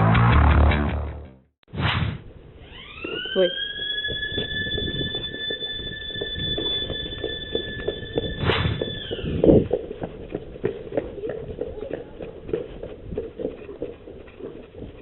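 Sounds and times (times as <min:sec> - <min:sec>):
electric siren wailing: 0:02.6 - 0:09.6.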